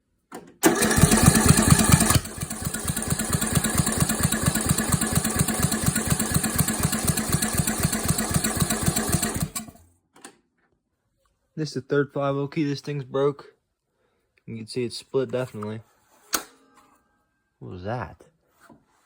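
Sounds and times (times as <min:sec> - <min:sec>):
small engine cranking: 0:00.6 - 0:09.8.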